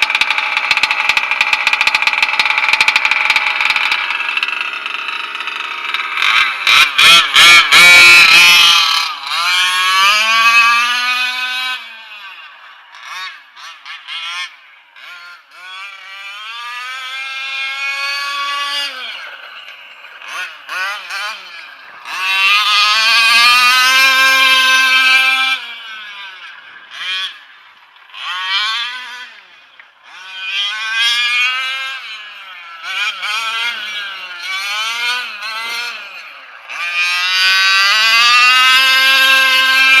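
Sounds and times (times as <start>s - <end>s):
two-stroke engine revving: 0.0s - 40.0s.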